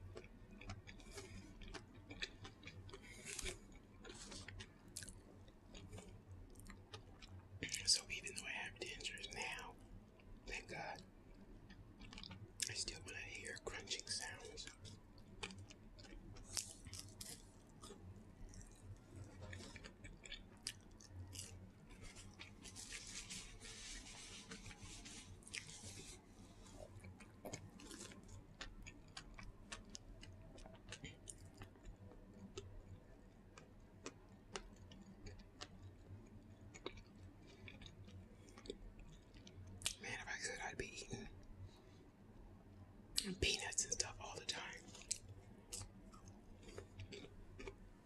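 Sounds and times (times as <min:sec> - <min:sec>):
person chewing: 0:00.1 - 0:07.8, 0:12.0 - 0:40.0, 0:44.6 - 0:47.8
soft hissing rustle: 0:22.1 - 0:26.7.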